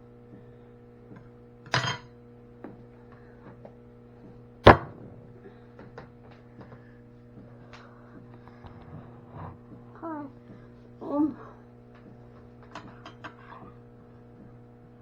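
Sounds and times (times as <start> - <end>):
low hum: 4.7 - 5.9.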